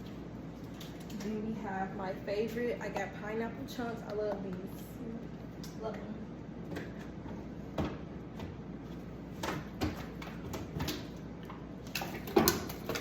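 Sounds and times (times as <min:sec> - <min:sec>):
grocery packaging knocks and clicks: 0:09.4 - 0:11.2.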